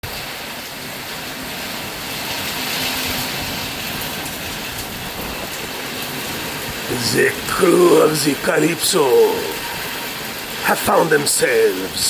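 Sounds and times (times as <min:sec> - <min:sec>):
heavy rain: 0:00.0 - 0:12.0.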